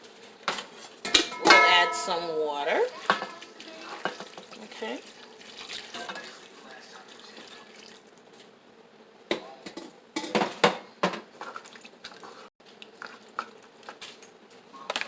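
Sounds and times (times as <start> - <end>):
utensil clanking against pot: 1.0 - 3.3.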